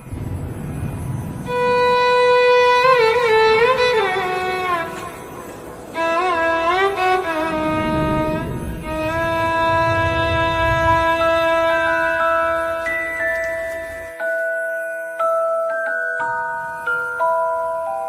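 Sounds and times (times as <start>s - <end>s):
low rumble: 0.0s - 4.8s, 6.6s - 13.3s
violin-like melody: 1.4s - 14.4s.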